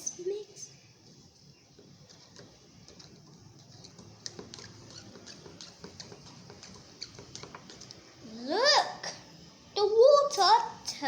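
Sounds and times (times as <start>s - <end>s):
stick stirring liquid in cup: 1.1s - 8.2s.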